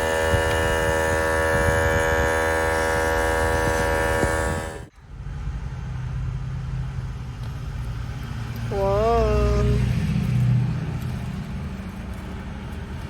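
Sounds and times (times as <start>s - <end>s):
tire inflator humming: 0.0s - 5.1s
low steady rumble: 0.0s - 13.0s.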